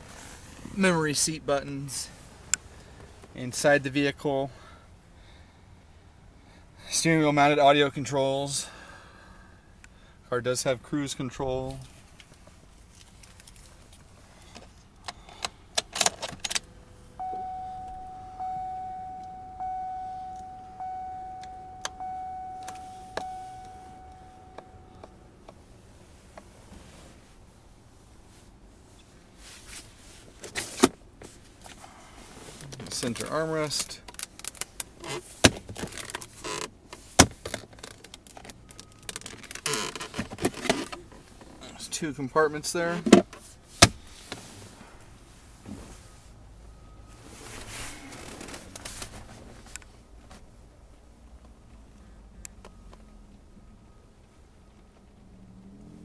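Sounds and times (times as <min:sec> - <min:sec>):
car keys jingling: 0:15.1 - 0:25.4
car warning chime: 0:16.7 - 0:25.4.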